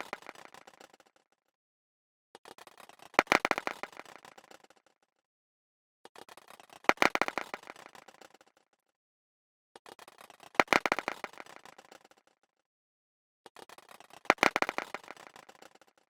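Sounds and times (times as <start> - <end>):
small objects clattering on hard surface: 13.9 - 15.6.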